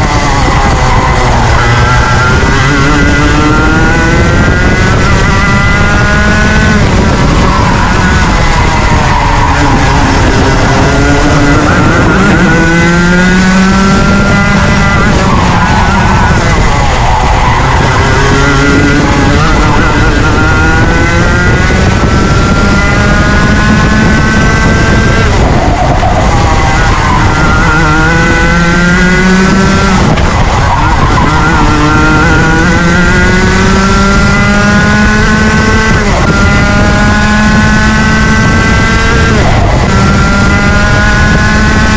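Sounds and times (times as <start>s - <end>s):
kart engine revving: 0.0s - 41.9s.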